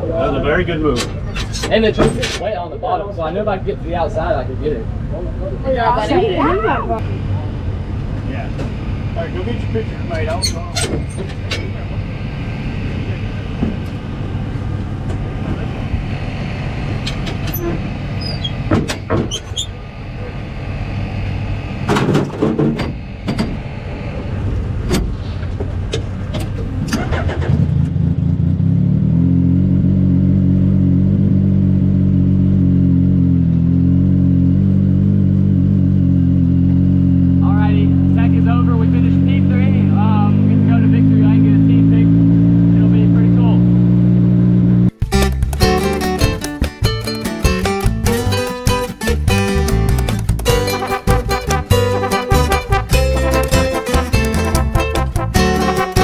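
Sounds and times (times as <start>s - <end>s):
sharp clicks and knocks: 44.9s - 56.0s.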